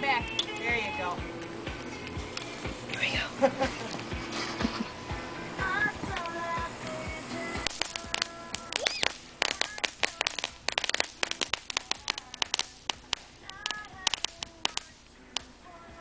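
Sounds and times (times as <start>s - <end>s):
firecrackers popping: 5.7s - 15.6s.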